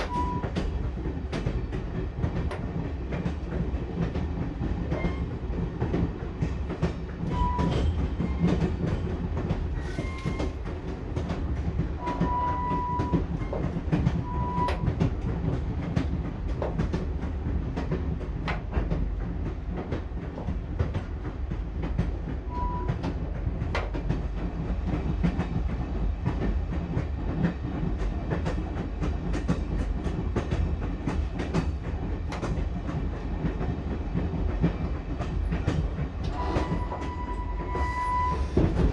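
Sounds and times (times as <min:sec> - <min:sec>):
train rumble inside carriage: 0:00.0 - 0:38.9.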